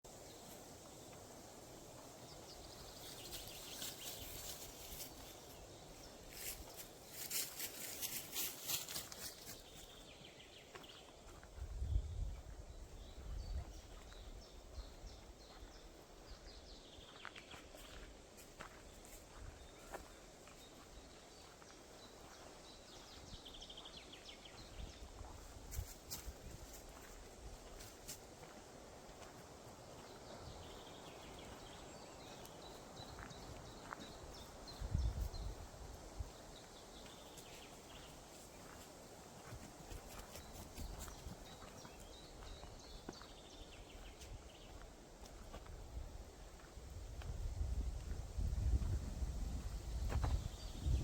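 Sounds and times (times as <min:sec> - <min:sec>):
faint songbirds: 0:00.1 - 0:51.0
small birds chirping: 0:00.1 - 0:51.0
low wind rumble: 0:45.7 - 0:51.0.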